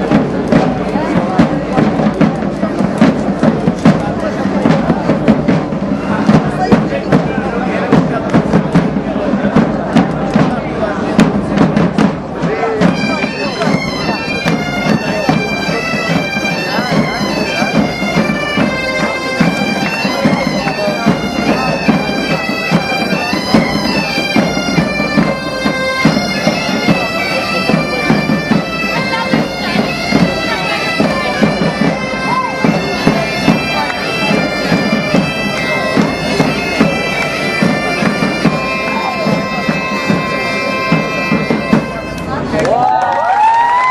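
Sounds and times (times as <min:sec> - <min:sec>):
side drums: 0:00.0 - 0:42.9
bagpipes playing over drones: 0:12.8 - 0:42.5.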